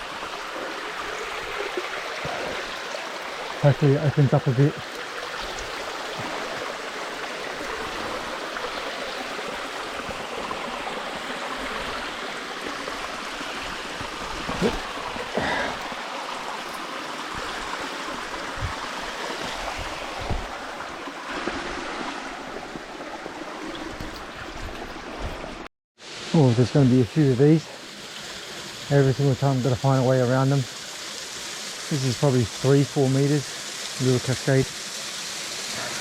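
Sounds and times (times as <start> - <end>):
creek water trickling over rocks: 0.0 - 36.0.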